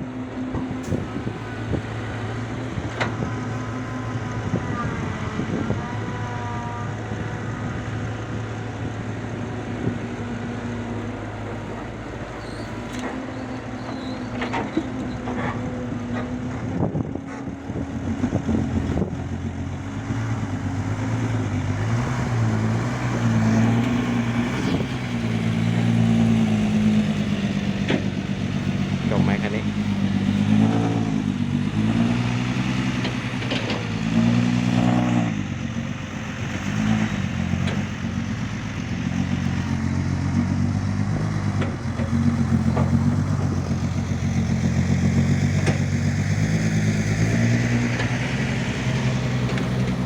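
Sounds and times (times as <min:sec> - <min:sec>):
heavy diesel engine running: 0:00.0 - 0:50.0
knocks and clanks: 0:41.4 - 0:43.6.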